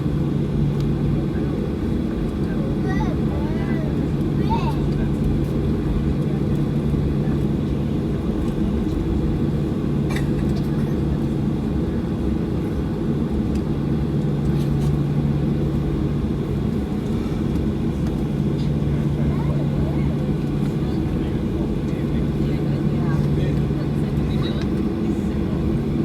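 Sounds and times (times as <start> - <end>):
airplane cabin rumble: 0.0 - 26.0
constant low hum: 0.0 - 26.0.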